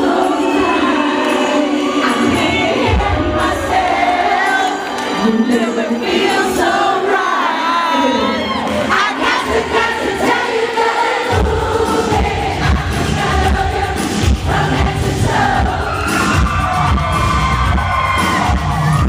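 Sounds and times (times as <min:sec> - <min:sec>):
crowd: 0:00.0 - 0:19.0
live pop music with singing: 0:00.0 - 0:19.0
bass and drum beat: 0:11.3 - 0:19.0.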